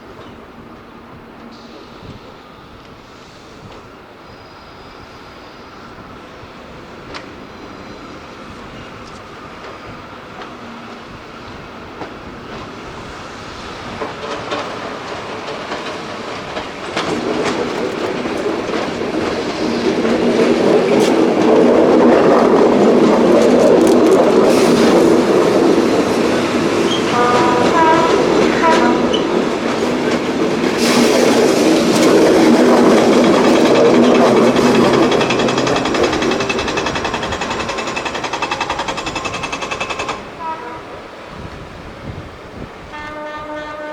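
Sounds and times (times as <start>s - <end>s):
locomotive drone passing: 12.9s - 41.3s
wheels clattering over rail joints: 13.8s - 40.6s.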